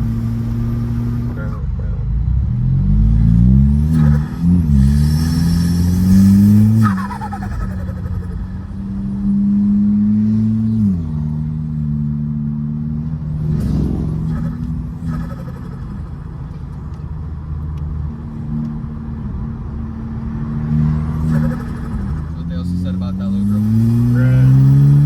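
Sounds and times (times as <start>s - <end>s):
car engine running while driving: 0.0s - 25.0s.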